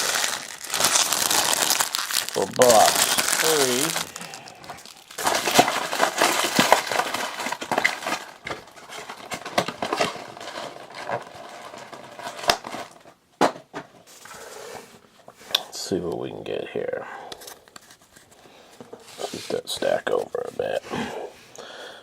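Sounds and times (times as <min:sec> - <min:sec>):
cards rustling: 0:00.0 - 0:12.4
wrapper crinkling: 0:00.0 - 0:13.0.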